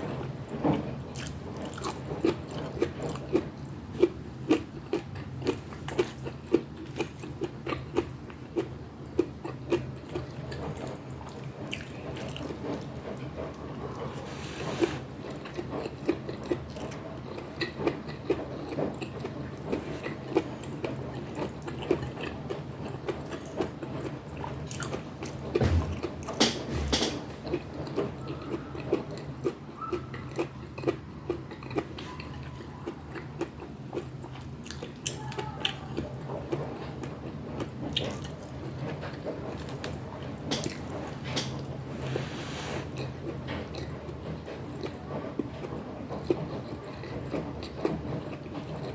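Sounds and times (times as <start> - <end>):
chewing and mouth sounds: 0.0 - 14.2, 15.2 - 41.8
steady low hum: 24.6 - 28.9.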